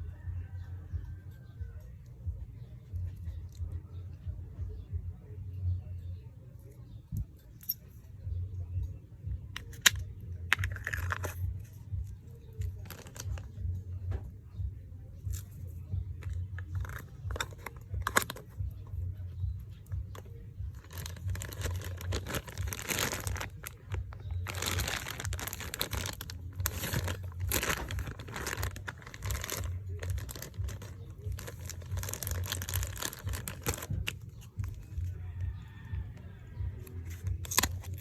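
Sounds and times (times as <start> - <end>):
packaging crinkling and tearing: 9.6 - 11.4, 12.7 - 13.5, 16.2 - 18.5, 20.7 - 34.9, 37.2 - 38.0.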